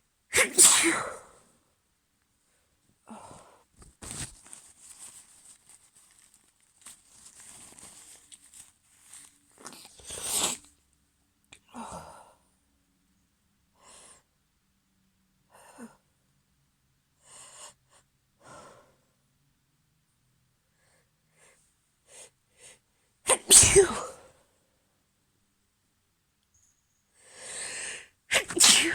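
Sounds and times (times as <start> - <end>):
woman sneezing: 0.3 - 1.3, 23.3 - 24.2, 28.3 - 28.9.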